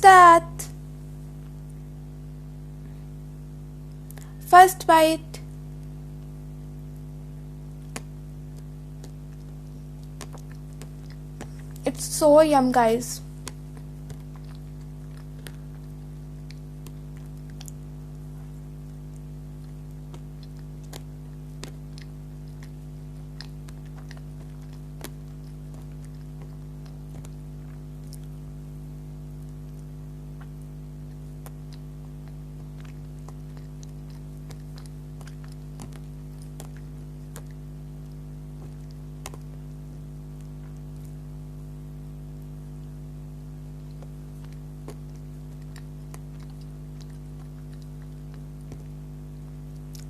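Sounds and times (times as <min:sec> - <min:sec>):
person chewing: 0:07.8 - 0:11.8, 0:13.7 - 0:28.5, 0:29.4 - 0:37.7, 0:43.8 - 0:49.0, 0:49.7 - 0:50.0
wet mouth clicks: 0:07.8 - 0:11.8, 0:13.4 - 0:17.9, 0:18.8 - 0:28.4, 0:29.4 - 0:39.6, 0:43.8 - 0:49.0, 0:49.7 - 0:50.0.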